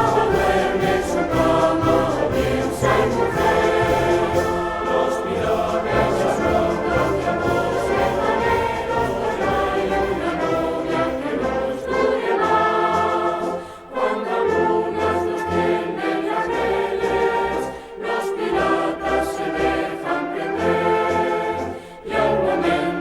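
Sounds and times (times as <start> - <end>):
choir singing: 0.0 - 23.0.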